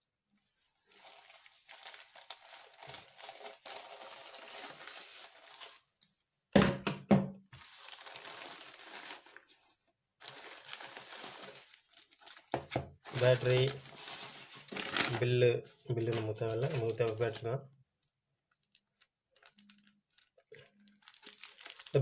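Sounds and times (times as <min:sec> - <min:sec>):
packaging crumpled and torn: 0:01.0 - 0:05.8, 0:07.6 - 0:09.5, 0:10.2 - 0:15.3, 0:16.1 - 0:17.4, 0:19.4 - 0:22.0.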